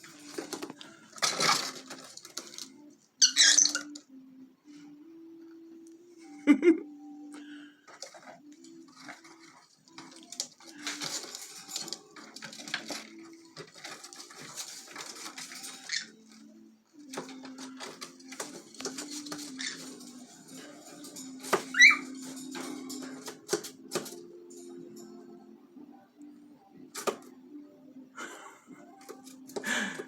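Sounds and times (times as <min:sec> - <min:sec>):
parrots rummaging in cardboard box: 0:00.0 - 0:02.7, 0:07.9 - 0:16.3, 0:17.0 - 0:24.2
parrot chirp: 0:03.2 - 0:04.0, 0:21.6 - 0:22.1.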